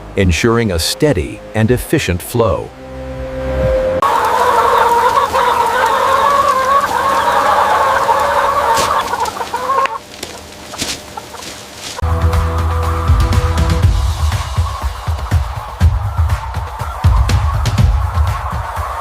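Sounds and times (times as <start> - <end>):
hens clucking: 4.0 - 12.1, 12.8 - 19.0
music with heavy beat: 12.0 - 19.0.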